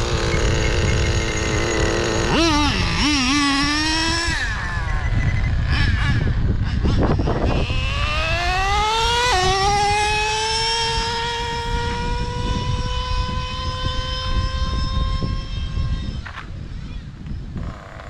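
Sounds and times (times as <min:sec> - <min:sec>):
small engine screaming: 0:00.0 - 0:18.0.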